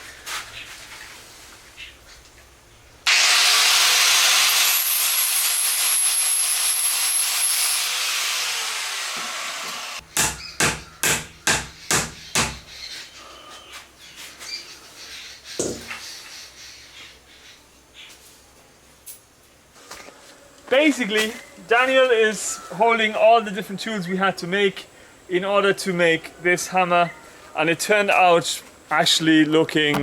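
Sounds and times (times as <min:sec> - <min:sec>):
power tool working wood: 0:03.1 - 0:10.0
sharp knocks: 0:10.2 - 0:12.7, 0:15.6 - 0:15.9.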